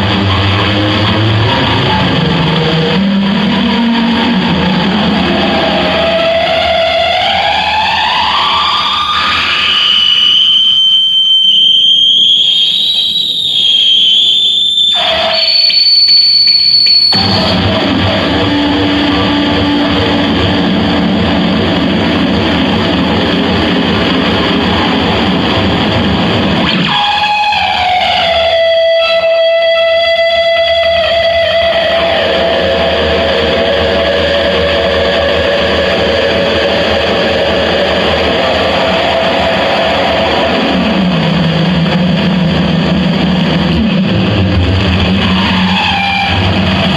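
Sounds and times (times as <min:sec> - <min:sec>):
harsh distorted noise music: 0:00.0 - 0:46.9
shrill wavering high tones: 0:03.3 - 0:22.0.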